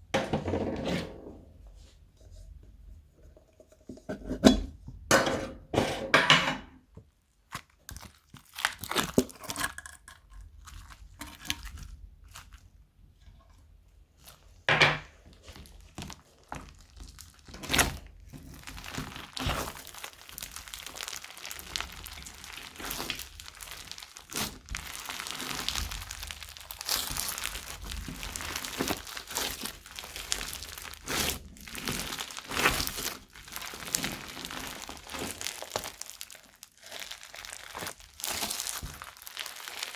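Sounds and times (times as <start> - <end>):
crunchy slime crackling: 7.4 - 12.8, 15.3 - 39.9
slime popping: 18.7 - 39.9.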